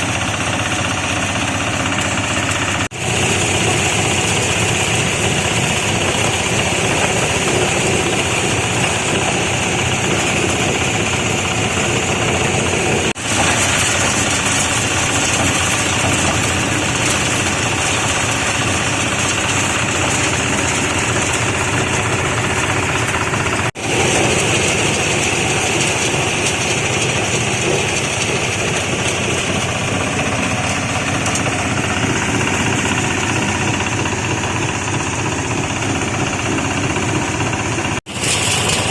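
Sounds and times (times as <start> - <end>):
sorting machine clattering: 0.0 - 38.9.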